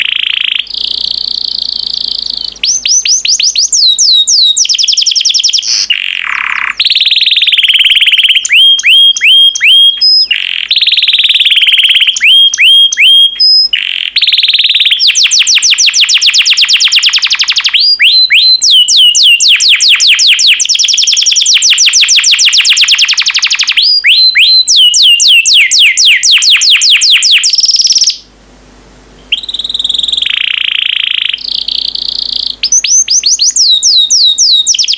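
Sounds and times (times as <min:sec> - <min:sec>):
canary singing trills: 0:00.0 - 0:28.3, 0:29.2 - 0:34.9.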